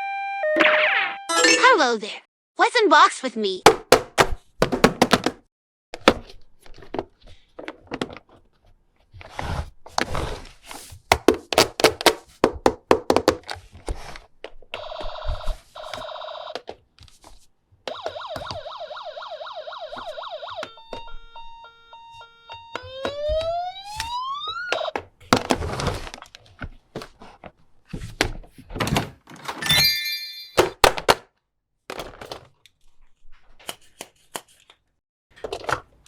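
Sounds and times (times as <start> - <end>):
electronic toy siren warbling: 0.0 - 1.6, 17.9 - 25.0.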